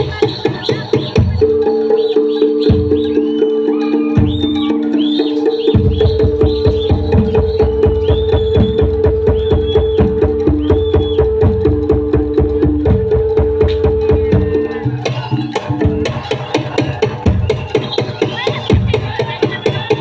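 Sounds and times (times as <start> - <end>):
short high melodic phrases: 0.0 - 19.2
fast dense drumming: 0.0 - 20.0
long held melodic tone: 1.3 - 16.0.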